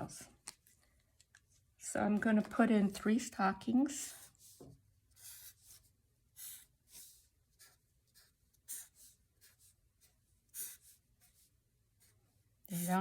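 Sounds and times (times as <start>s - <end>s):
drawing tool scratching on paper: 4.0s - 12.1s, 12.7s - 13.0s.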